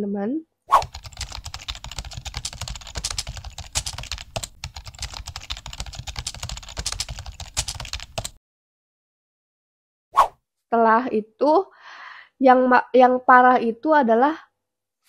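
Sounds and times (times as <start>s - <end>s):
typing on computer keyboard: 0.8s - 8.4s.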